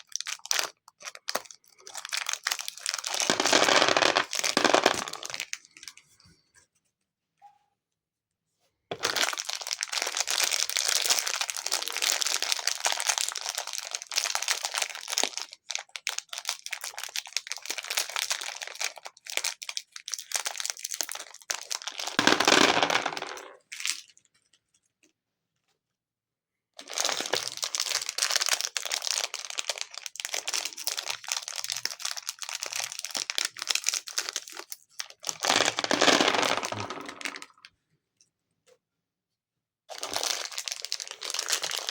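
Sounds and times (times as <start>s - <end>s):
plastic packaging crinkling and tearing: 0.0s - 6.0s, 8.9s - 22.2s, 26.8s - 37.4s, 39.9s - 41.9s.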